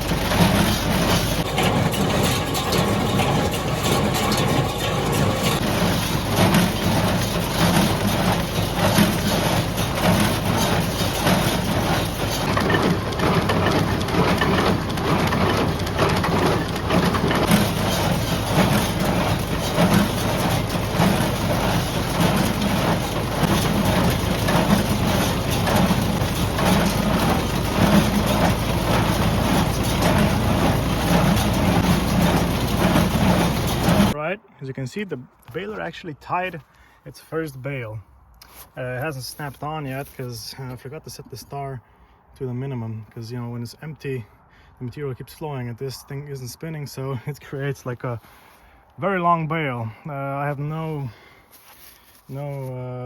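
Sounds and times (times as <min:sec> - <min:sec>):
baler knocking clatter: 0:00.0 - 0:34.2
tractor engine running: 0:00.0 - 0:34.4.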